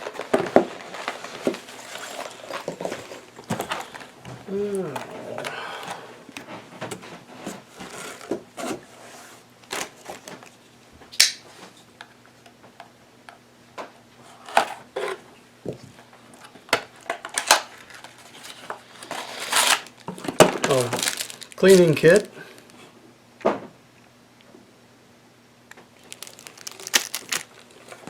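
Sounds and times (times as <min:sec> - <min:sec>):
packaging rustling: 0:00.0 - 0:06.4, 0:17.0 - 0:22.8, 0:26.0 - 0:28.0.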